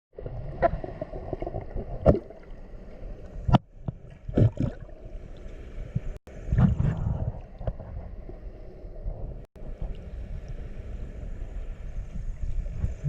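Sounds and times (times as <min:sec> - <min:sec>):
muffled water noise: 0:00.1 - 0:13.0.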